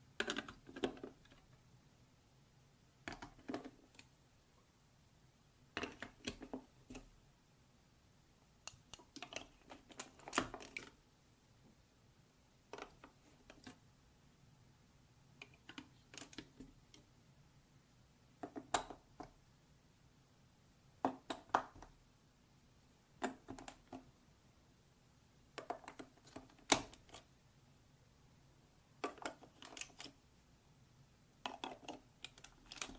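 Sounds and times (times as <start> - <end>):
plastic toys and marbles clicking: 0.2 - 1.4, 29.0 - 30.1, 31.4 - 32.9.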